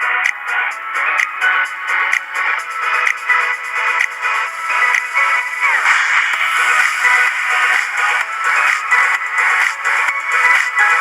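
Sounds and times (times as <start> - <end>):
electronic music with synth tones: 0.0 - 11.0.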